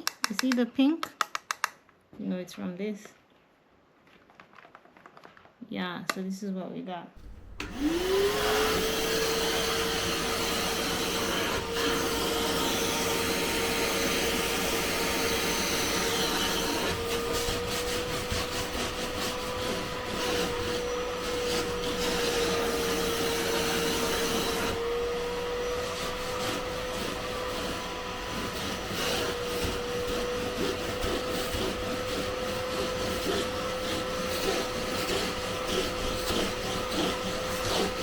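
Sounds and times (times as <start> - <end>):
handheld vacuum cleaner running: 7.2 - 38.0
vacuum rubbing on fabric: 7.6 - 38.0.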